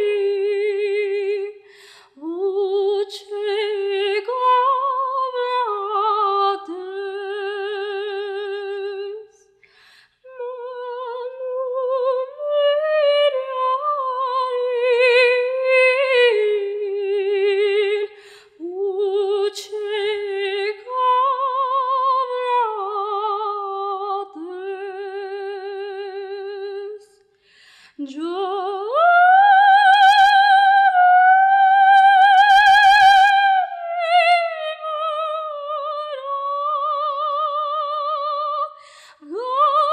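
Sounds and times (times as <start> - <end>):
girl singing with vibrato: 0.0 - 9.4, 10.2 - 27.1, 27.9 - 39.9.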